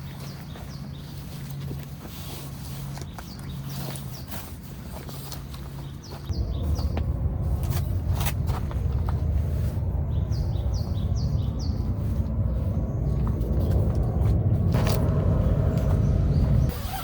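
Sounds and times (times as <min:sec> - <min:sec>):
low rumble: 0:06.3 - 0:16.8
bird chirping: 0:10.0 - 0:17.0.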